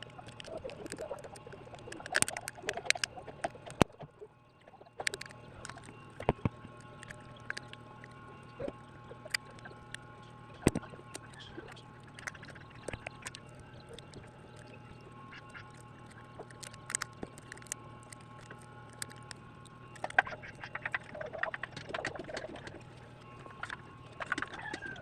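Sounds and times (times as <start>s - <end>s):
small tools clicking and tapping: 0.0s - 4.0s, 5.0s - 7.8s, 16.4s - 22.6s
steady electrical hum: 0.0s - 25.0s.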